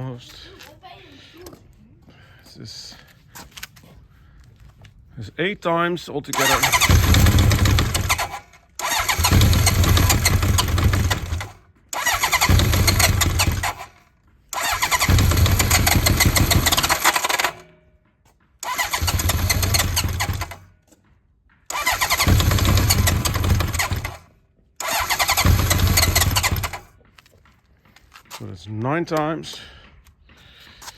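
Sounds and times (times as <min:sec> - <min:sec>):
electric starter cranking engine: 0:06.3 - 0:17.8, 0:18.6 - 0:20.7, 0:21.7 - 0:27.0.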